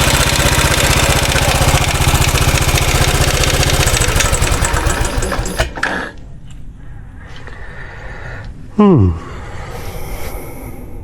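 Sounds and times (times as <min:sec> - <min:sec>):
motorcycle engine idling: 0:00.0 - 0:05.7.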